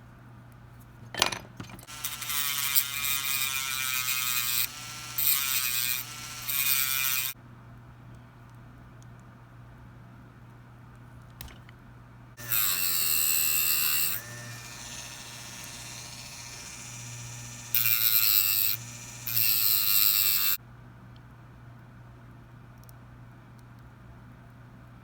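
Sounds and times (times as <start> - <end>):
small electric motor whirring: 1.9 - 7.4, 12.4 - 20.6.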